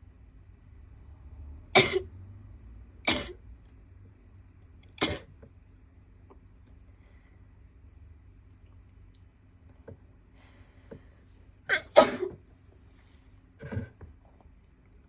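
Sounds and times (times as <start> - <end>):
person sneezing: 11.7 - 12.4.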